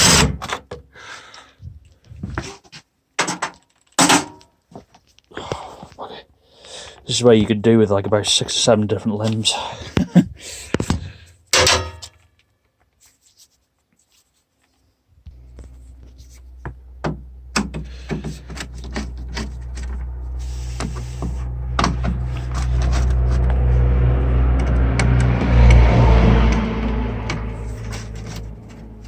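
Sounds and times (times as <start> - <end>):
steady low hum: 15.1 - 29.0.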